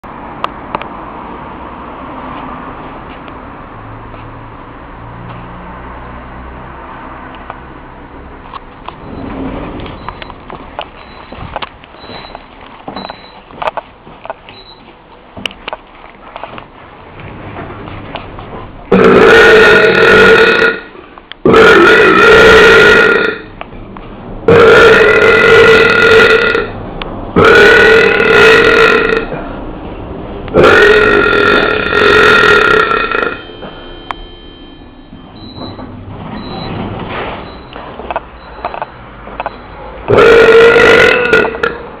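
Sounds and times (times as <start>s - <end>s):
person belching loudly: 18.9s - 23.5s, 24.5s - 26.8s, 27.4s - 29.4s, 30.5s - 33.4s, 40.1s - 41.8s.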